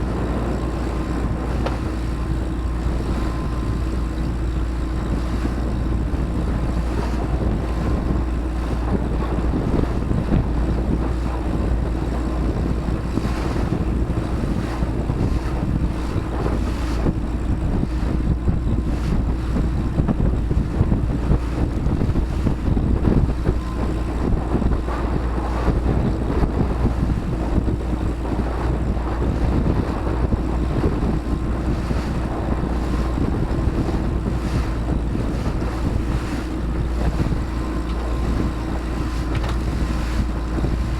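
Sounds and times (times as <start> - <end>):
boat engine droning: 0.0 - 40.9
water rushing past hull: 0.0 - 40.9
wind buffeting microphone: 0.0 - 40.9.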